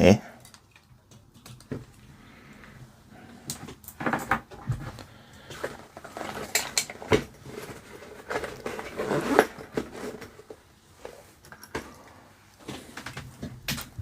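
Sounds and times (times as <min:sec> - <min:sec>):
light plastic clicks and rustles: 0:00.4 - 0:02.8.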